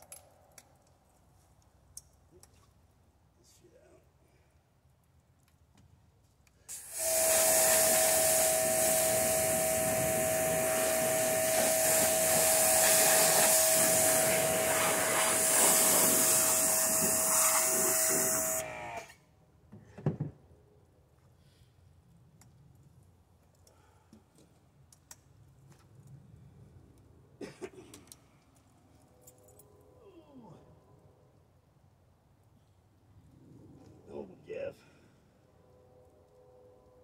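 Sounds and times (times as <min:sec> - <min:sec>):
high-speed motor whining: 0:06.8 - 0:19.2.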